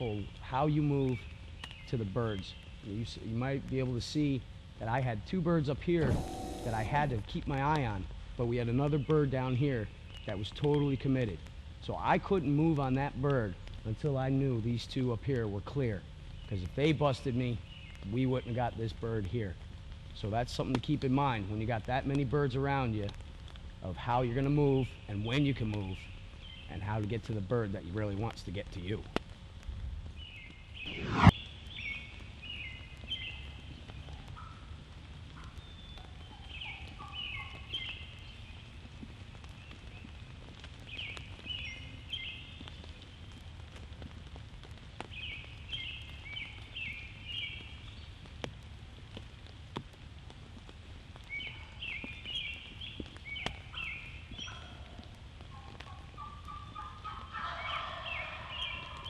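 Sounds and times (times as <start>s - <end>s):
wild turkeys gobbling: 53.7s - 59.0s.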